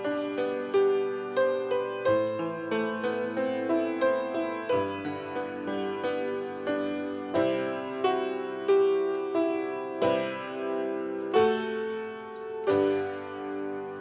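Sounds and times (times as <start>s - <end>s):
piano chords: 0.0s - 14.0s.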